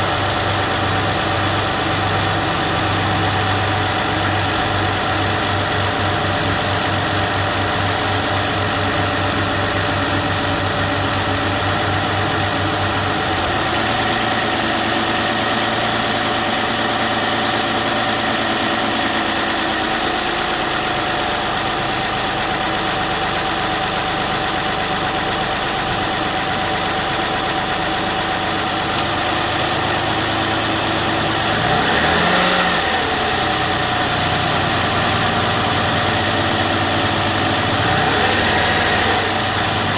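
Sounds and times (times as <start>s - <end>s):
car engine idling with ticking: 0.0s - 39.9s.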